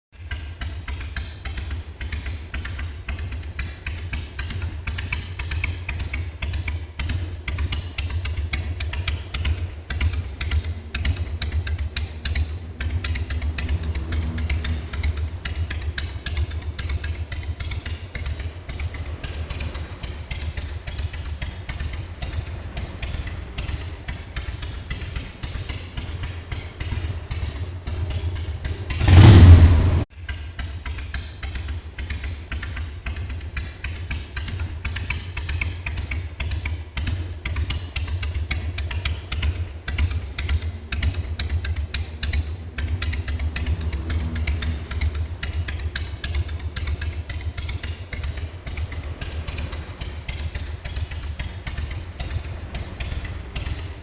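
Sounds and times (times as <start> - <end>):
motorcycle engine idling: 0.0 - 54.0
engine revving burst: 11.9 - 17.6, 26.9 - 30.1, 42.6 - 46.7.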